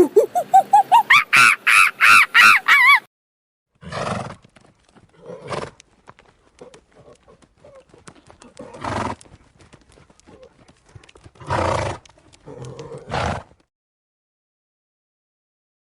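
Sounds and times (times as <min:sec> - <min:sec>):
pulsed animal calls rising: 0:00.0 - 0:03.0.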